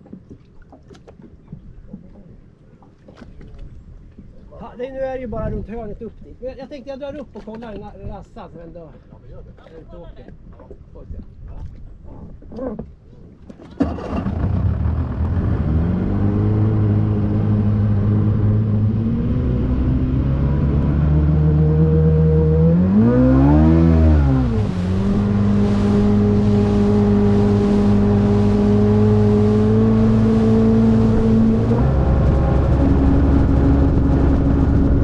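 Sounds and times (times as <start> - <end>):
motorboat engine running: 13.6 - 35.0.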